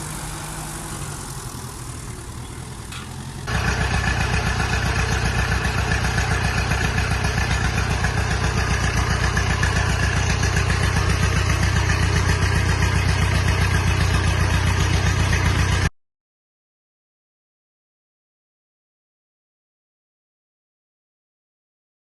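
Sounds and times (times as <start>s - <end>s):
tractor engine idling: 0.0s - 15.9s.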